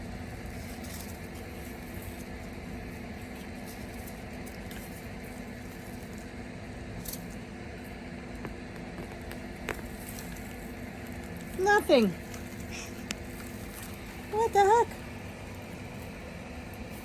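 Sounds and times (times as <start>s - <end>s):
steady low hum: 0.0s - 17.0s
hands digging through soil: 8.8s - 17.0s.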